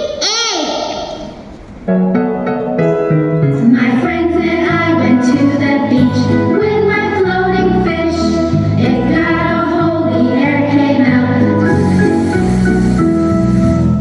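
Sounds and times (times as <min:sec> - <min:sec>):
people singing: 0:03.7 - 0:12.2.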